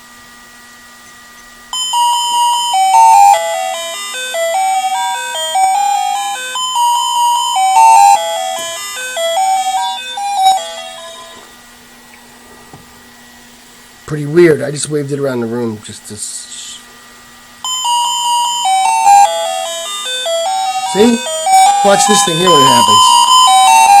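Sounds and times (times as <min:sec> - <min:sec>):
doorbell chime tune: 0:01.7 - 0:11.6, 0:17.6 - 0:24.0.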